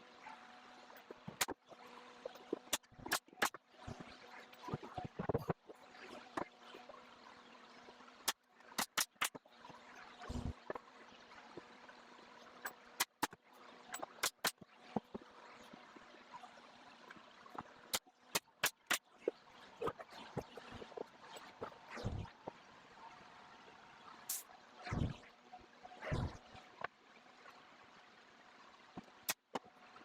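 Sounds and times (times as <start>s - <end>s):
pneumatic stapler firing: 8.8s - 9.4s, 14.2s - 14.6s.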